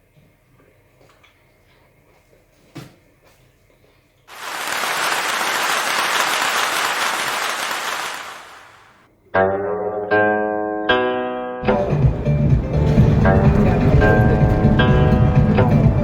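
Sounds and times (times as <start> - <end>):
applause: 4.3 - 9.0
plucked guitar music: 9.4 - 16.0.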